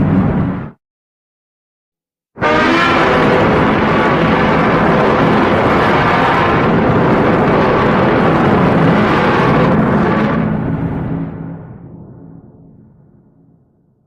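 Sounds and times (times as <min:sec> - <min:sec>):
monster roar: 0:02.4 - 0:08.0.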